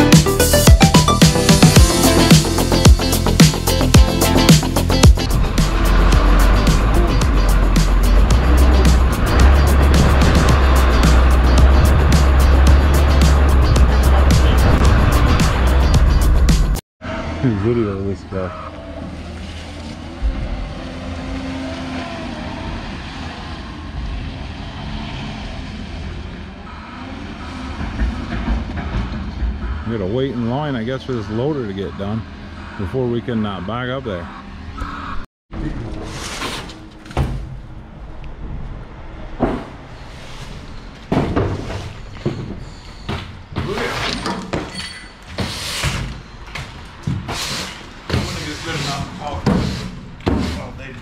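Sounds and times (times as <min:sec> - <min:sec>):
diesel engine running: 0:00.0 - 0:17.4
vehicle engine rumbling: 0:00.0 - 0:36.1
thump: 0:39.4 - 0:39.8.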